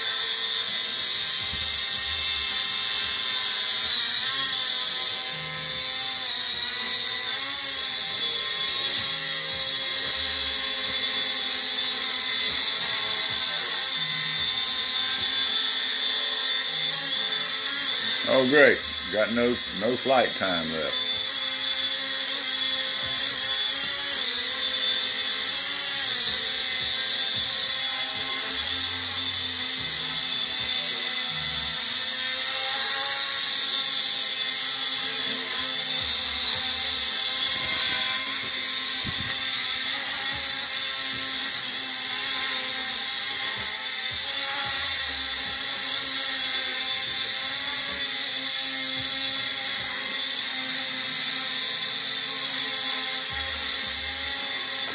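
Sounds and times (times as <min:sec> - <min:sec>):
drone propellers whining: 0:17.3 - 0:21.8.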